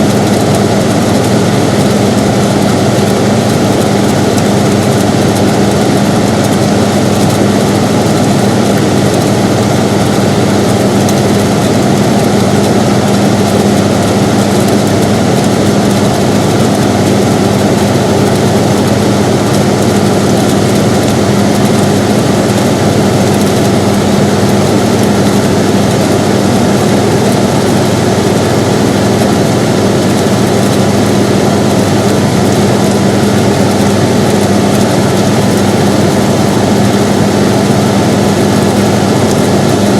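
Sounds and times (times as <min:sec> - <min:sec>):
air conditioner running: 0:00.0 - 0:39.9.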